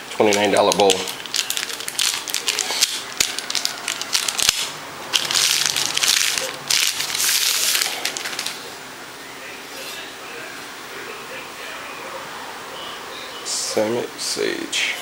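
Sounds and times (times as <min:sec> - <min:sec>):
packaging crinkling and rustling: 0:00.1 - 0:08.7.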